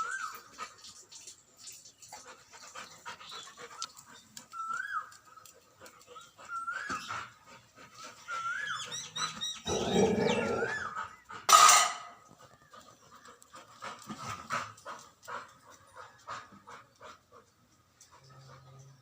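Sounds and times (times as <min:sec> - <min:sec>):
dog panting: 0:00.5 - 0:11.5, 0:12.2 - 0:19.0
dog whining: 0:08.4 - 0:11.0
dog low rough growl: 0:09.6 - 0:11.2.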